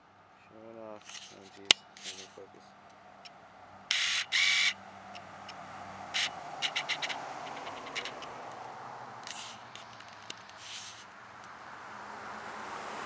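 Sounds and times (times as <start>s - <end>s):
camera handling clicks and scratches: 1.0s - 2.4s, 3.9s - 4.7s, 6.2s - 8.3s, 9.2s - 11.1s.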